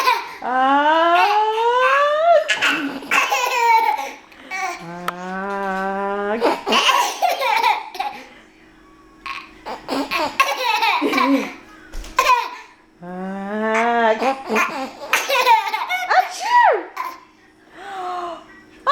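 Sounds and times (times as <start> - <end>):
toddler laughing: 0.0 - 8.3, 9.3 - 11.6, 12.2 - 12.7, 13.7 - 17.3.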